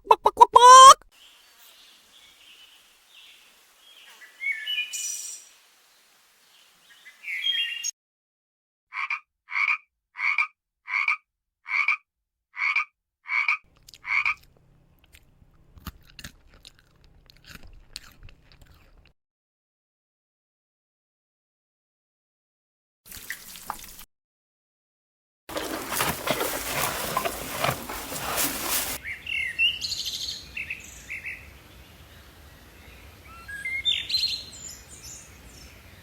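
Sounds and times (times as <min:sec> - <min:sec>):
duck quacking rapidly: 0:00.0 - 0:01.0
brief animal calls: 0:00.1 - 0:01.0.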